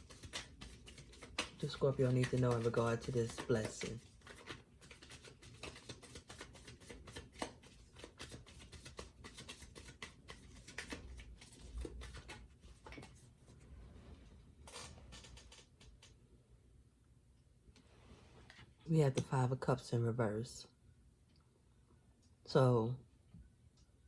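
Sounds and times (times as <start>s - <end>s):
cards being shuffled: 0.0s - 13.3s, 14.6s - 16.2s.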